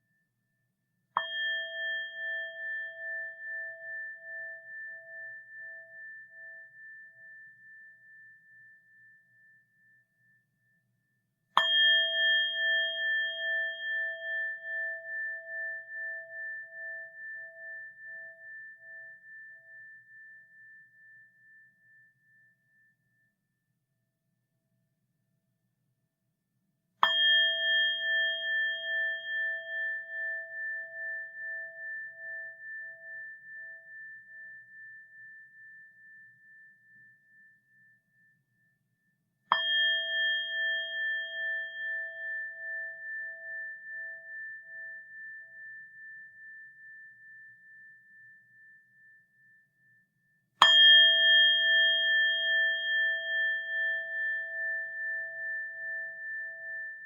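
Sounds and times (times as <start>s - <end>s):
metal bowl bell ringing: 1.2s - 7.5s, 11.6s - 20.3s, 27.0s - 36.2s, 39.5s - 47.8s, 50.6s - 57.0s.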